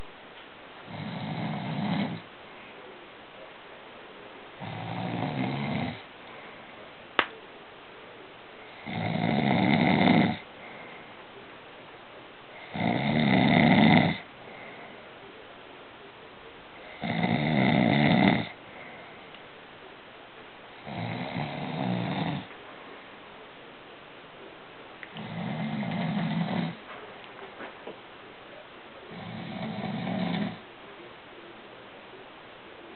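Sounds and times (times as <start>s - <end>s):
man snoring: 0.9s - 2.2s, 4.6s - 6.0s, 8.7s - 10.4s, 12.6s - 14.2s, 16.9s - 18.6s, 20.8s - 22.5s, 25.2s - 26.8s, 29.1s - 30.6s.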